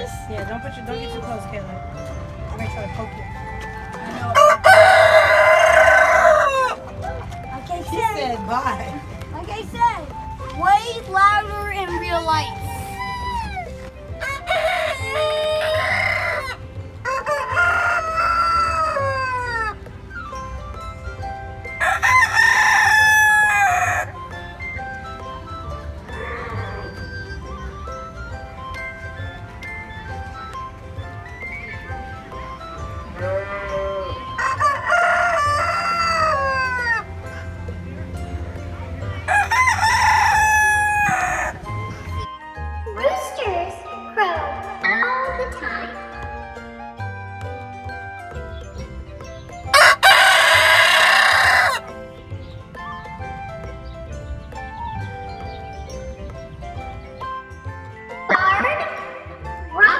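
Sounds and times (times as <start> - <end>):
rooster crowing: 4.0 - 7.1, 13.0 - 19.8, 21.8 - 24.2, 34.3 - 37.1, 39.3 - 41.9, 49.7 - 51.9.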